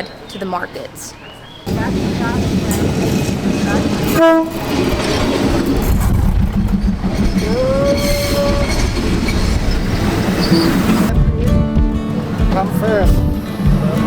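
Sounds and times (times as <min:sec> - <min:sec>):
diesel train rumbling: 0:01.7 - 0:14.0
train horn: 0:04.0 - 0:04.8.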